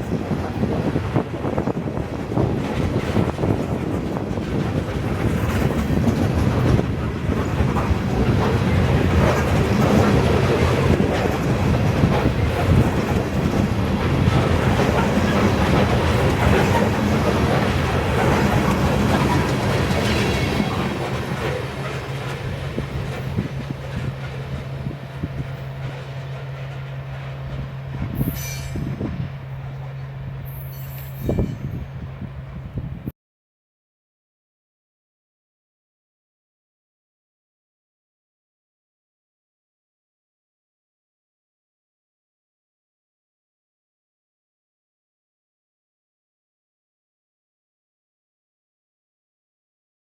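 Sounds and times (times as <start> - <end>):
freight train rumbling past: 0.0 - 33.1.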